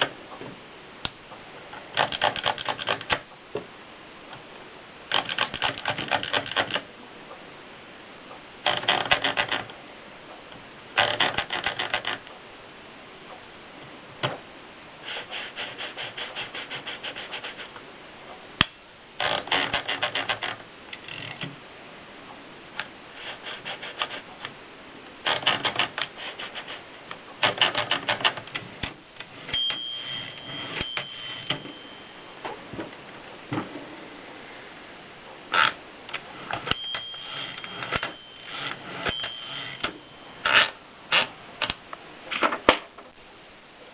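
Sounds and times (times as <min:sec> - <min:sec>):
typewriter keystrokes clattering: 0:02.0 - 0:03.2, 0:05.1 - 0:06.8, 0:25.2 - 0:26.8, 0:27.4 - 0:29.0.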